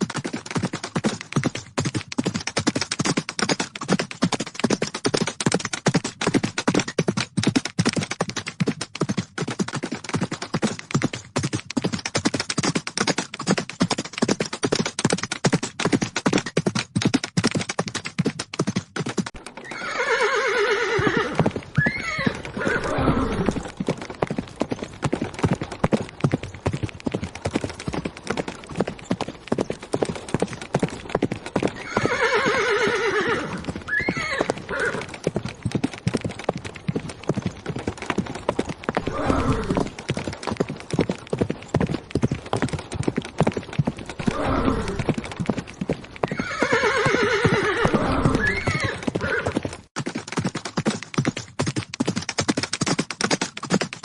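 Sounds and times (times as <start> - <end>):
horses galloping: 0.0 - 54.0
horse whinnying: 19.6 - 23.8, 31.7 - 35.2, 39.0 - 40.0, 44.2 - 45.2, 46.2 - 49.6.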